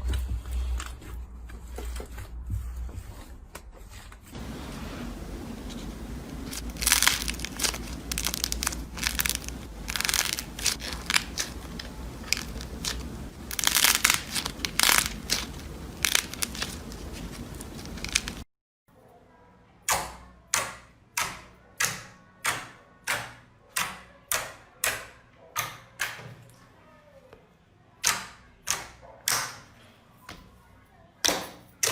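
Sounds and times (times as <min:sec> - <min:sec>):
slime squeezed crackling: 0:04.4 - 0:18.4.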